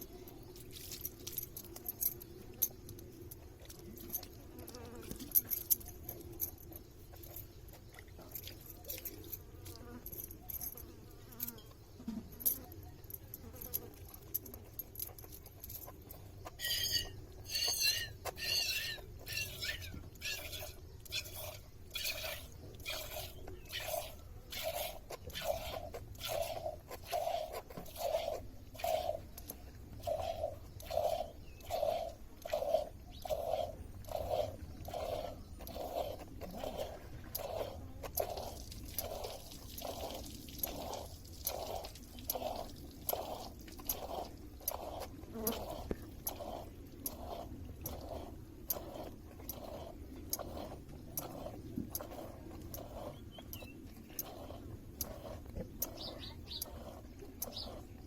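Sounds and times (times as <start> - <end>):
milk squirting into metal pail: 16.5 - 58.0.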